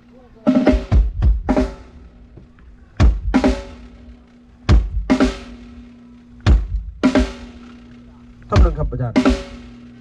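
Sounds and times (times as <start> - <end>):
drum kit hits: 6.4 - 7.7, 8.5 - 9.8.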